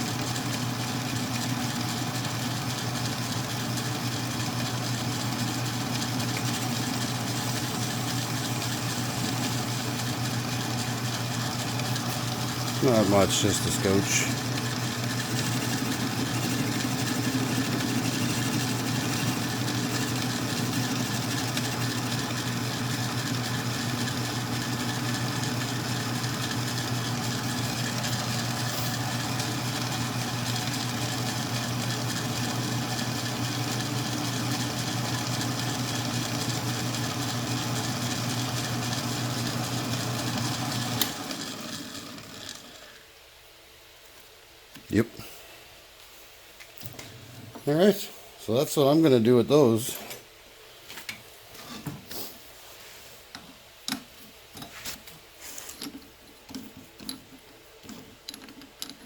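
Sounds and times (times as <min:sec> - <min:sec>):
metal lathe motor humming: 0:00.0 - 0:42.9.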